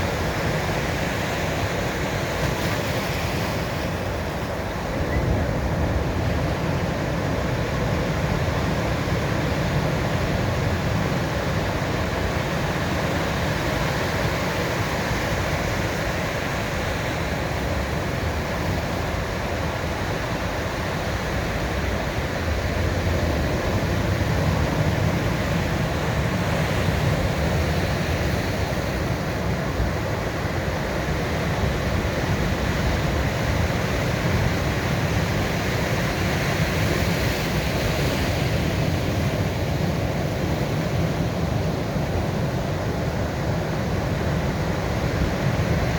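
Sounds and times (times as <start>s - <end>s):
ocean surf rolling onto beach: 0.0s - 45.9s.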